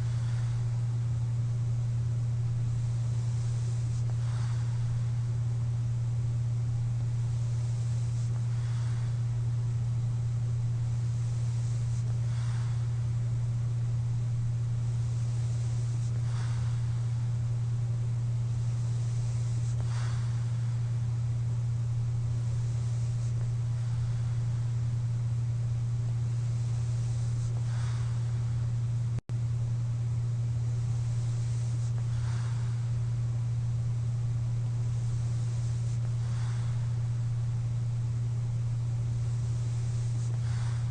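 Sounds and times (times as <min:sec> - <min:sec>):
soft airy breathing: 0:00.0 - 0:40.9
steady low hum: 0:00.0 - 0:40.9.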